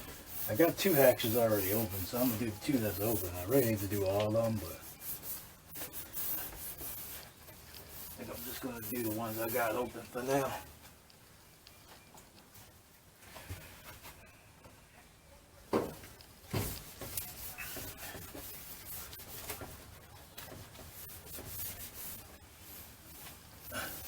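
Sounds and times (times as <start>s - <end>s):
hands rubbing rubber seal: 0.0s - 10.2s.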